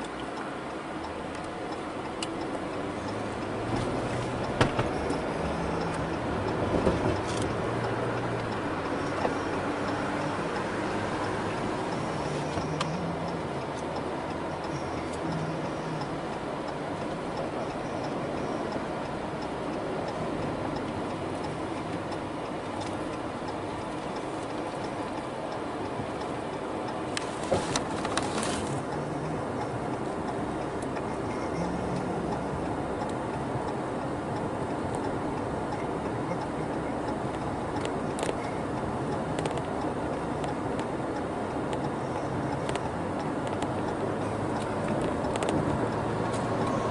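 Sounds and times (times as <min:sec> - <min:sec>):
engine and road noise: 0:00.0 - 0:46.9
turn signal ticking: 0:00.0 - 0:46.9
sharp clicks: 0:18.7 - 0:46.9.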